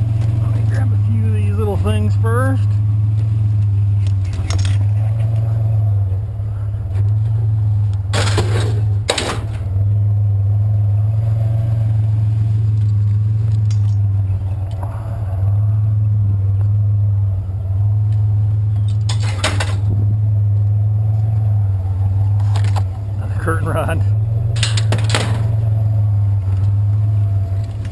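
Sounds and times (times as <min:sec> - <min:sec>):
truck engine idling: 0:00.0 - 0:27.9
scrap metal clanking: 0:08.1 - 0:09.7, 0:24.5 - 0:25.7.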